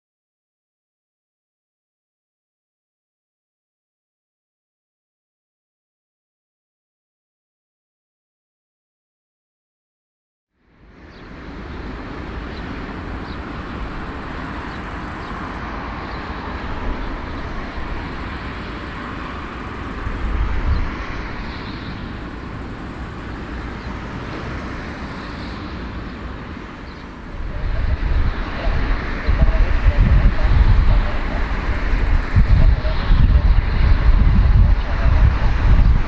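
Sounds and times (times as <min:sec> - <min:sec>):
aircraft engines rumbling: 0:10.7 - 0:36.0.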